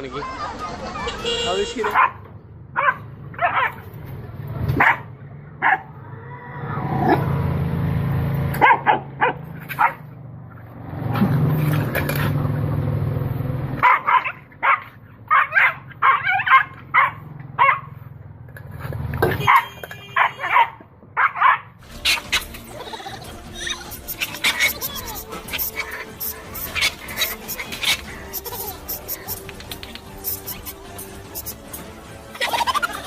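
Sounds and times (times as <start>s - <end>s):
dog barking: 1.8s - 3.8s, 4.8s - 5.9s, 8.6s - 10.0s, 13.8s - 18.0s, 19.4s - 22.4s.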